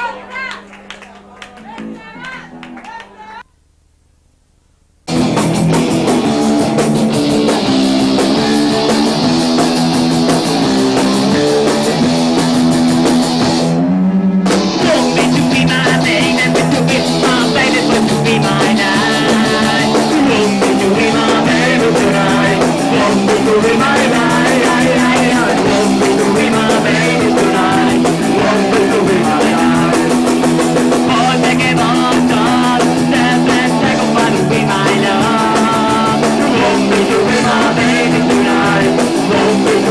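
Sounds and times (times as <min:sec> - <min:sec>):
punk rock band playing live: 0:05.1 - 0:39.9.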